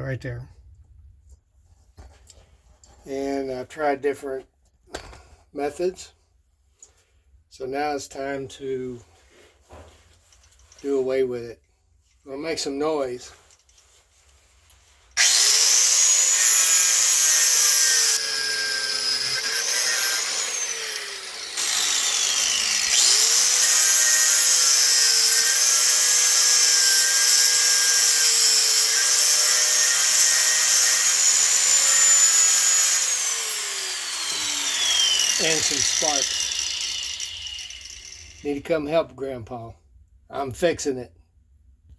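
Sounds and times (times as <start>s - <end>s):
angle grinder cutting metal: 15.2s - 38.6s.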